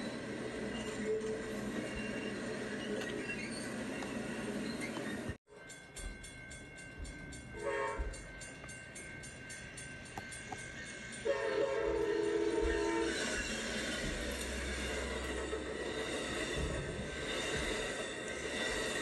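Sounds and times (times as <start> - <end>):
diesel locomotive passing: 0.0 - 19.0
locomotive air horn: 7.6 - 8.2, 11.2 - 13.3.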